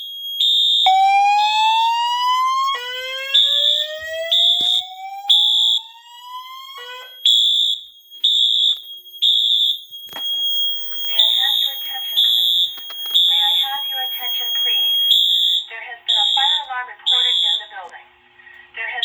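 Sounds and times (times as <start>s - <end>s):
pulsing fire alarm horn: 0.0s - 17.9s.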